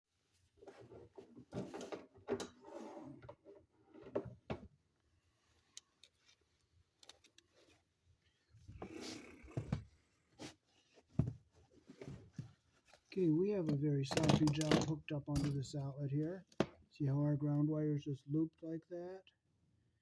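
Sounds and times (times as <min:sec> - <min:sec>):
handling knocks and rustles: 0:00.5 - 0:02.7, 0:09.6 - 0:16.8.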